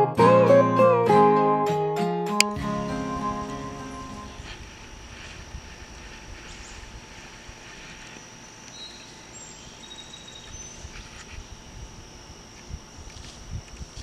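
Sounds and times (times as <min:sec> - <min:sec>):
high insect drone: 0:02.6 - 0:14.0
faint bird chirps: 0:08.1 - 0:11.0.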